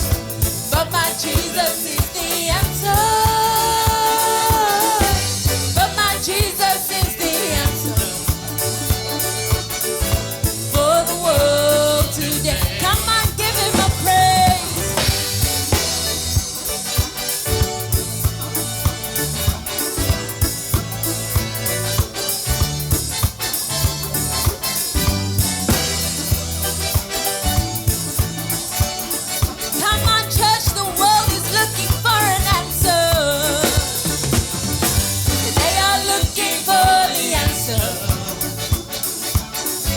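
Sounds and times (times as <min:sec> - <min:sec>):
gospel band playing: 0:00.0 - 0:39.9
person singing: 0:00.7 - 0:08.8, 0:10.7 - 0:15.2, 0:29.9 - 0:34.2, 0:35.3 - 0:39.0.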